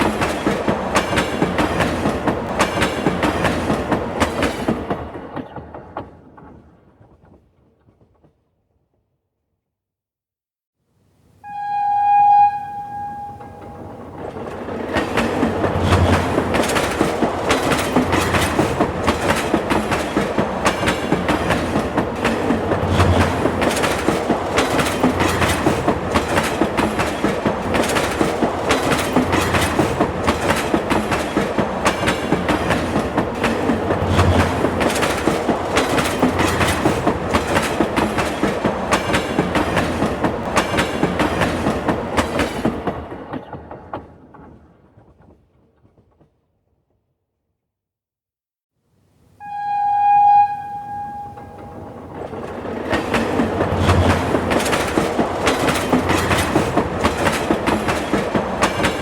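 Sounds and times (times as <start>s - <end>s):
train wheels clicking on rails: 0.0s - 8.4s, 13.4s - 46.5s, 51.0s - 59.0s
train horn: 11.4s - 14.2s, 49.4s - 52.1s.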